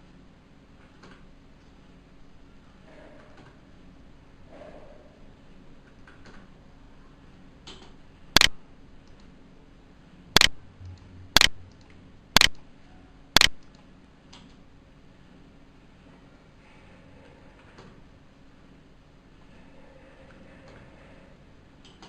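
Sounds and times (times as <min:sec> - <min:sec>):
computer mouse clicking: 0:10.4 - 0:12.6, 0:13.4 - 0:14.6.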